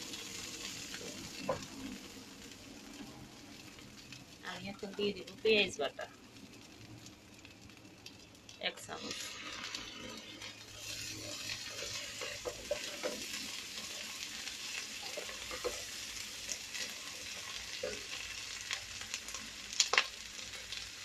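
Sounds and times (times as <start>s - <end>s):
onions frying in hot oil: 0.0s - 21.0s
spoon scraping a pan: 9.0s - 18.8s.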